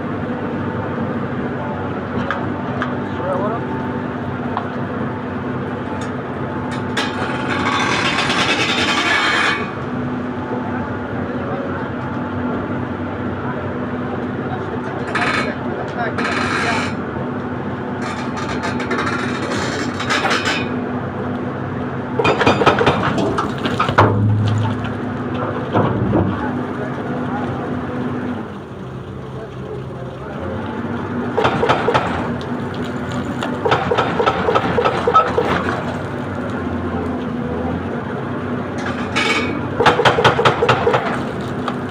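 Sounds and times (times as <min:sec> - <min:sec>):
heavy machine engine running: 0:00.0 - 0:41.9
loud rough machine noise: 0:00.0 - 0:41.9
metallic clanking and rattling: 0:22.2 - 0:25.0.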